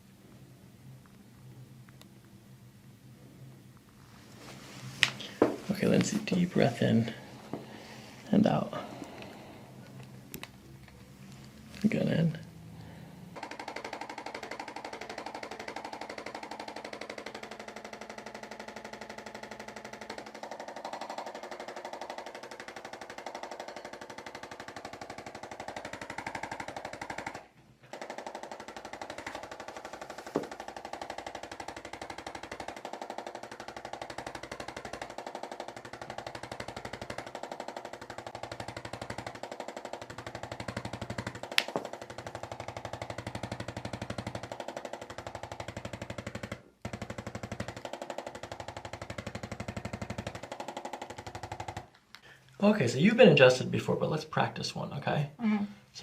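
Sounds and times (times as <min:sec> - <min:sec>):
motorised device pulsing rattle: 0:12.0 - 0:52.3
sharp clicks: 0:36.8 - 0:42.0.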